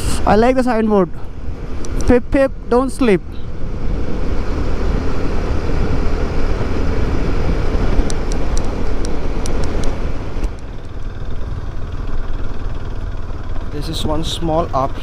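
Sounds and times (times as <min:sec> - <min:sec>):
heavy wind noise: 0:00.0 - 0:11.6
motorcycle engine running: 0:00.0 - 0:15.0
road noise: 0:00.0 - 0:15.0.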